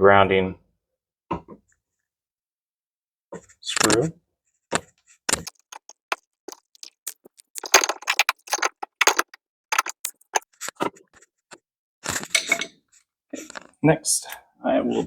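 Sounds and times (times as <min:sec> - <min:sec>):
small metal parts knocking: 0:05.4 - 0:10.4.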